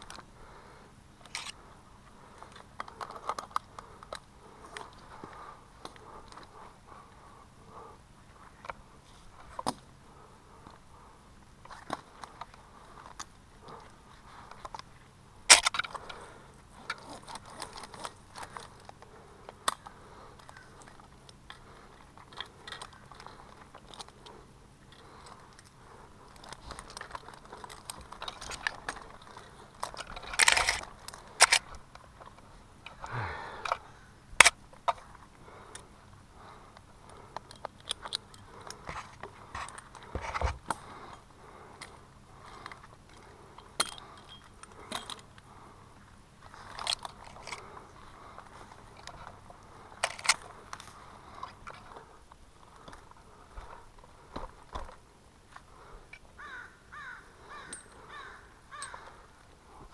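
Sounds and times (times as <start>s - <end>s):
metal clinks and knocks: 43.6s - 45.3s, 57.6s - 58.1s.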